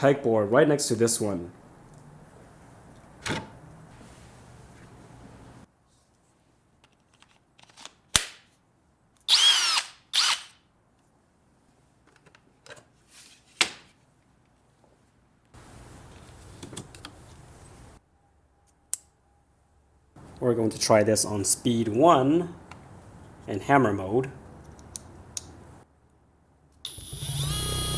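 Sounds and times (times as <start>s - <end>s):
drill motor whining: 9.3s - 10.5s, 26.8s - 27.9s.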